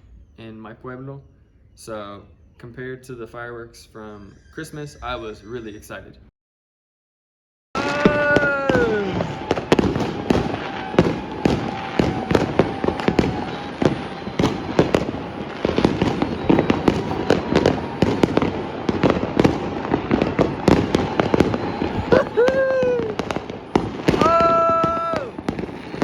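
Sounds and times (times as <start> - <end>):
fireworks cracking and banging: 7.8 - 26.0
tone falling in pitch: 10.6 - 26.0.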